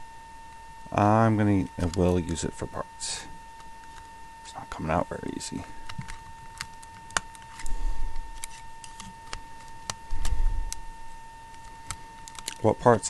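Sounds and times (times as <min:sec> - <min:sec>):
faint steady high tone: 0:00.0 - 0:11.6
tools clicking on plastic: 0:11.5 - 0:12.6.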